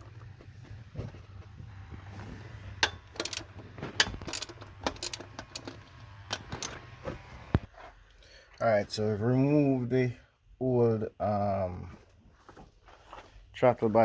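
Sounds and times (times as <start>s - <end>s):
steady low hum: 0.0s - 7.7s
ratchet wrench clicking: 2.8s - 6.8s
metal clinks: 2.8s - 6.9s.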